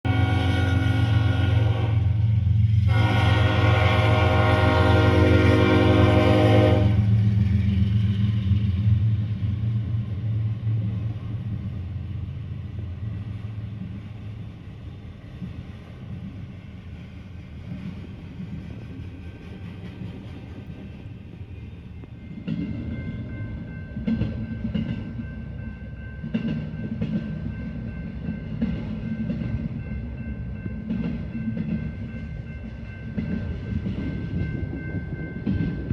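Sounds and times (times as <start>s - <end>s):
locomotive horn chord: 0.1s - 2.2s, 2.8s - 7.1s.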